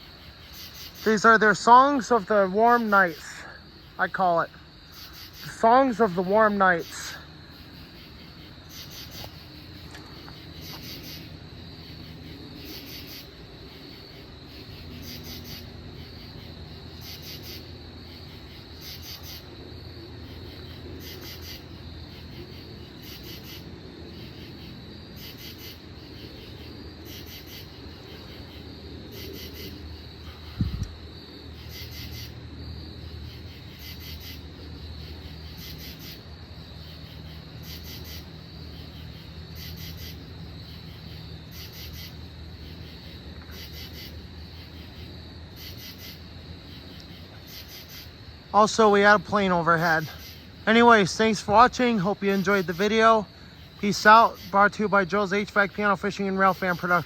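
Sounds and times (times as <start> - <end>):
high insect trill: 0.0 - 57.0
katydids raspy pulsed calls: 0.6 - 7.2.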